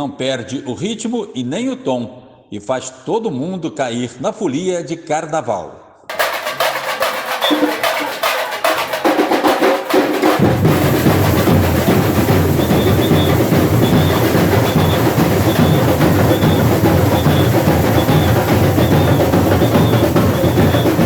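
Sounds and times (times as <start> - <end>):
high drums and snares: 6.1 - 21.0
deep bass drums: 10.4 - 21.0.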